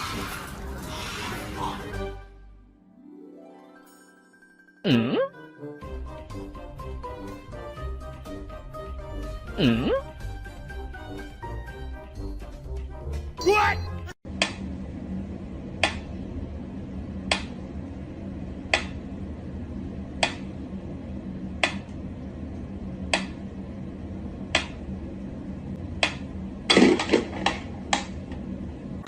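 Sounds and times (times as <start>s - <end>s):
low steady hum: 14.3s - 29.0s.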